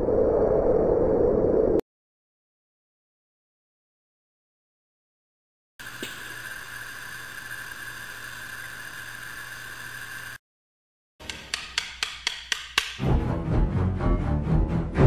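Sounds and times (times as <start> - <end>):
electric hum with whine: 5.8 - 10.4
wood block percussion ticks: 11.2 - 13.0.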